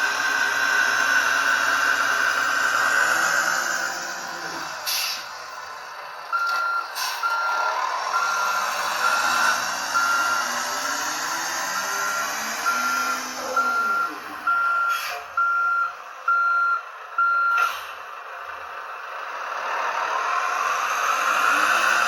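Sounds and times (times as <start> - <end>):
reversing beeps: 6.3 - 17.8.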